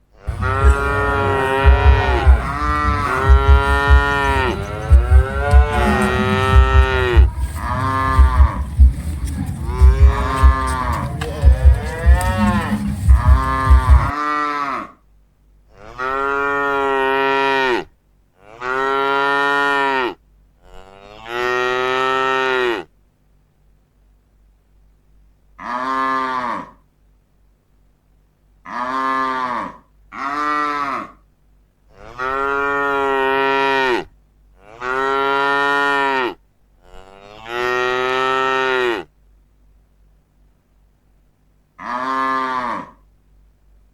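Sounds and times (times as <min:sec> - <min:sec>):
cattle mooing: 0:00.2 - 0:15.0, 0:28.7 - 0:31.2, 0:31.9 - 0:39.1, 0:41.8 - 0:43.0
low rumble: 0:00.3 - 0:14.1.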